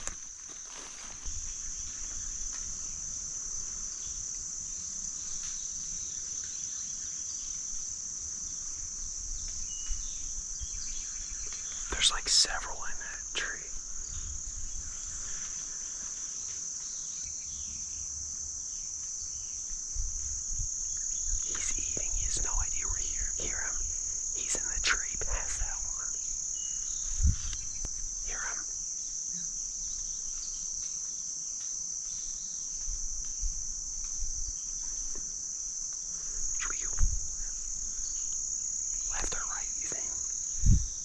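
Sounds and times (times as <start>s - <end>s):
insects singing: 0.0s - 41.0s
faint low bumps: 19.7s - 28.6s, 36.2s - 41.0s
faint chirps: 21.0s - 30.6s, 36.2s - 41.0s.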